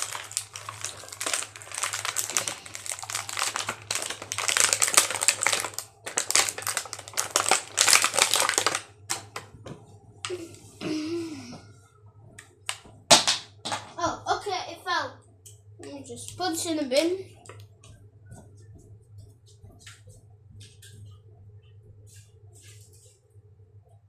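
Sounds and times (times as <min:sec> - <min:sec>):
plastic packaging crinkling: 0:00.0 - 0:09.5.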